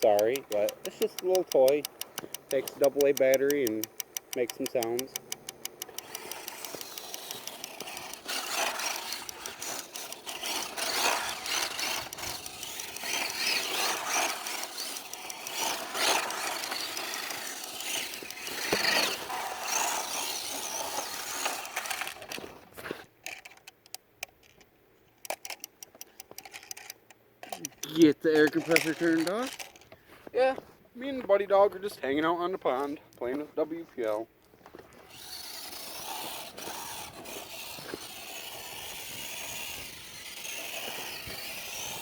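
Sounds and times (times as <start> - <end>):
toy compressor sound effect: 0.0 - 22.3, 35.1 - 42.0.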